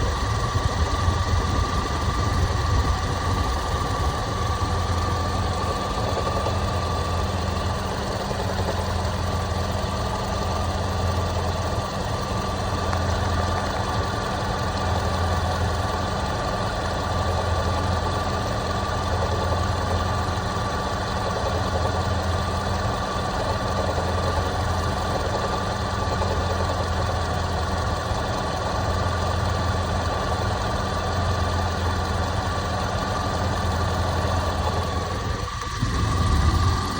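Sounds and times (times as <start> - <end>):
high whine: 0.0 - 8.4, 34.3 - 36.9
engine idling: 0.0 - 36.9
engine knocking: 0.0 - 36.9.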